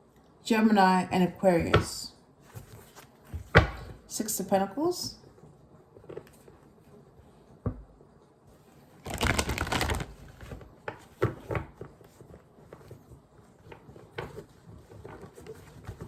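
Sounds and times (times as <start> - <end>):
cards being shuffled: 9.0 - 10.6
cards tapping and snapping: 9.0 - 10.6.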